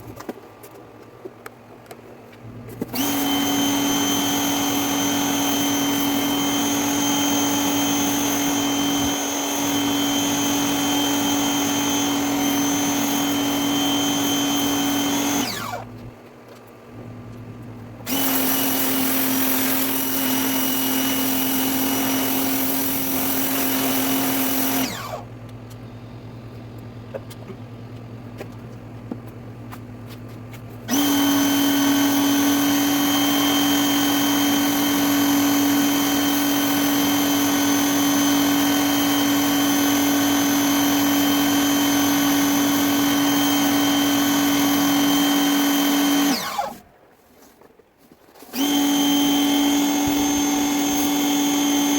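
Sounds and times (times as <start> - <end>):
pressure washer motor humming: 2.9 - 16.0, 18.0 - 25.9, 30.9 - 46.8, 48.5 - 51.9.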